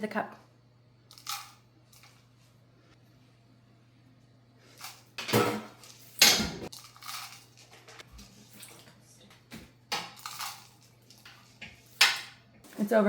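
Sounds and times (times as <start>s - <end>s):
dishes and utensils clattering: 5.2s - 9.0s.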